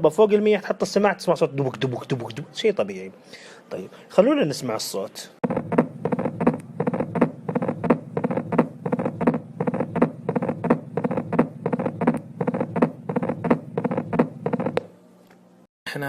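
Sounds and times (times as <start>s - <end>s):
faint steady hum: 5.1s - 16.0s
heartbeats through a stethoscope: 5.4s - 14.9s.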